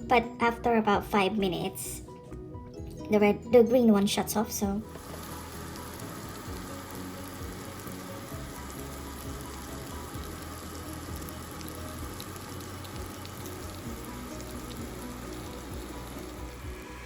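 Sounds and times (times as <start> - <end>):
soft background music: 0.0 - 17.0
food sizzling on a grill: 4.9 - 17.0.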